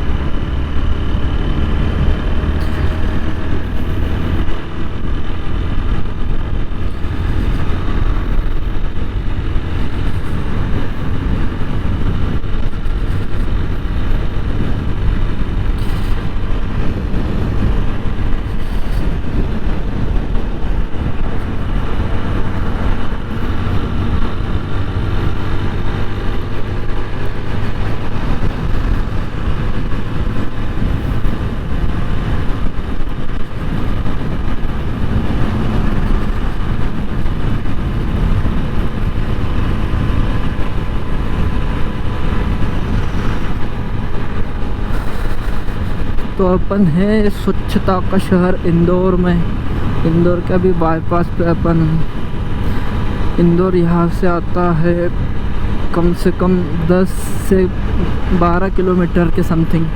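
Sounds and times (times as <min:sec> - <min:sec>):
motorcycle engine running: 0:00.0 - 0:59.9
person talking: 0:46.3 - 0:52.1, 0:53.3 - 0:55.2, 0:55.8 - 0:59.9.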